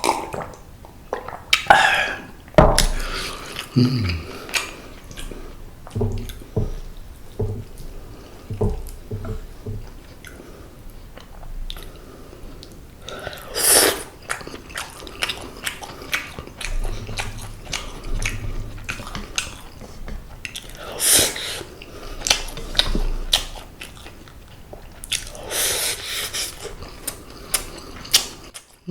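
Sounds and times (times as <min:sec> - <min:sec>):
soft low thuds: 0:05.3 - 0:10.1, 0:16.6 - 0:20.5
chewing and biting food: 0:12.7 - 0:25.4, 0:26.4 - 0:28.8.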